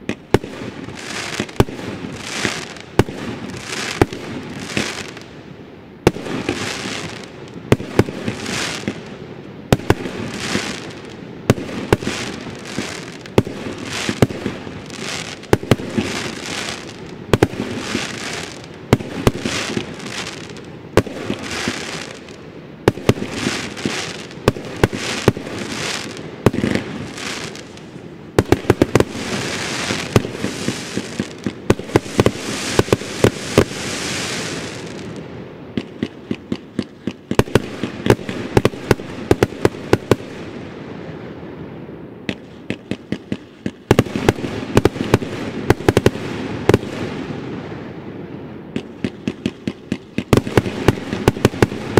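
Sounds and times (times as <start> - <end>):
firework shots cracking: 0.0 - 5.2, 6.0 - 9.1, 9.7 - 40.4, 42.3 - 47.2, 48.7 - 51.9
firework hissing: 0.9 - 5.2, 8.2 - 8.9, 11.9 - 17.1, 17.7 - 20.6, 23.3 - 27.9, 28.7 - 35.2.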